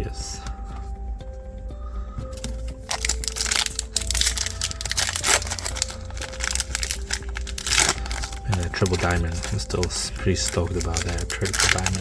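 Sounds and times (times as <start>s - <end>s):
wrapper crinkling and tearing: 2.4s - 12.0s.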